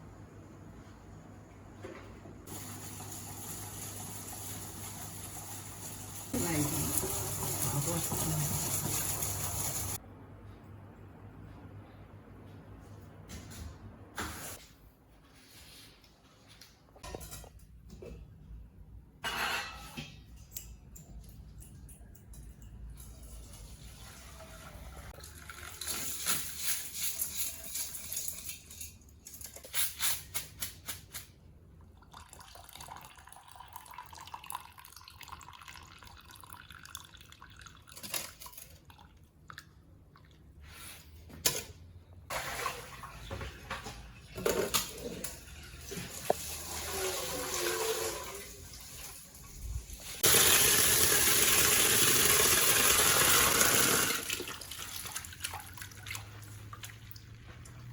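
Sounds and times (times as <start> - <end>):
water splashing in a basin: 42.3 - 44.4, 50.0 - 57.9.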